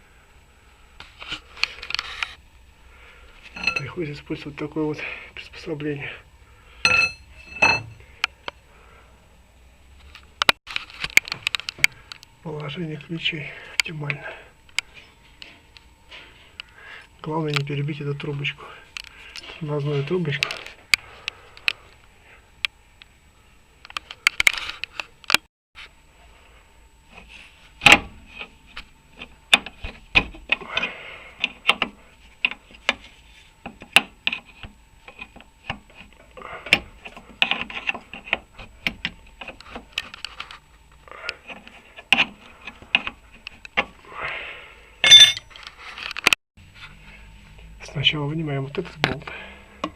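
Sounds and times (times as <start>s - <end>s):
metal scraping: 3.4s - 4.0s, 6.9s - 8.1s, 45.0s - 45.6s
metal tools clinking and knocking: 3.5s - 4.0s, 6.9s - 8.0s, 45.0s - 45.6s.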